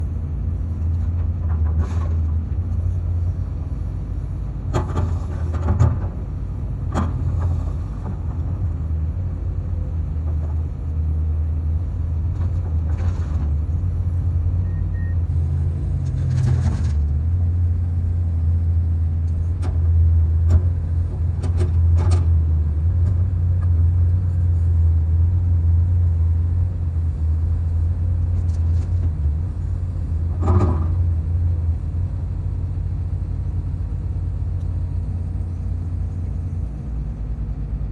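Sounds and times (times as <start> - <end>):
bulldozer engine rumbling: 0.0 - 37.9.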